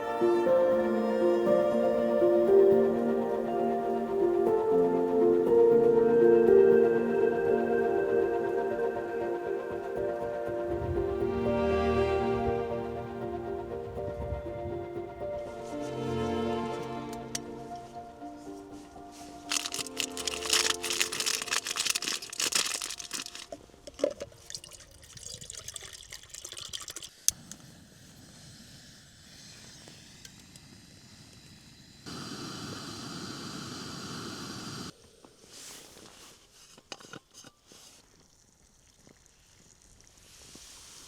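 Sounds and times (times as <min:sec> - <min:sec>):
packaging crinkling and rustling: 0:19.3 - 0:24.4
small clicks: 0:19.5 - 0:24.3
water pouring: 0:19.5 - 0:27.3, 0:37.8 - 0:40.6.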